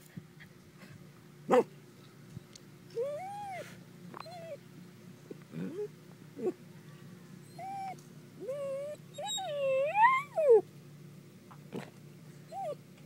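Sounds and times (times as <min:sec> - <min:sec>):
dog whining yelps: 0:03.0 - 0:04.6, 0:07.4 - 0:10.6, 0:12.5 - 0:12.8.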